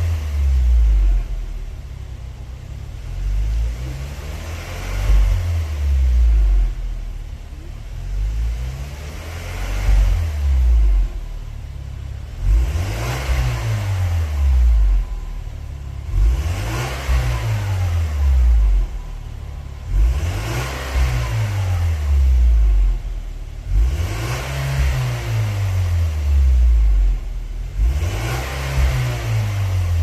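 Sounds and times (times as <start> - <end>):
car engine revving: 0.0 - 30.0.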